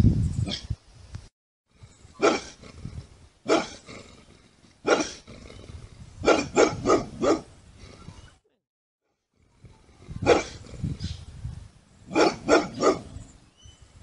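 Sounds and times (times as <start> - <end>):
dog barking: 2.2 - 2.6, 3.5 - 3.8, 4.8 - 5.2, 6.2 - 7.5, 10.2 - 10.6, 12.1 - 13.2.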